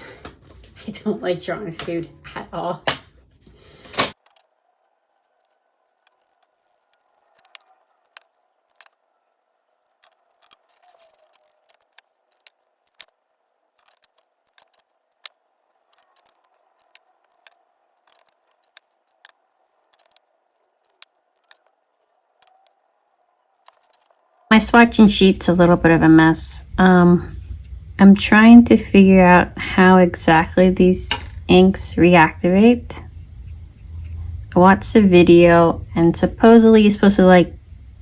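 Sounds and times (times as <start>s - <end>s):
clicks and taps on paper: 5.4s - 9.0s, 9.8s - 24.2s
faint steady hum: 24.5s - 38.0s.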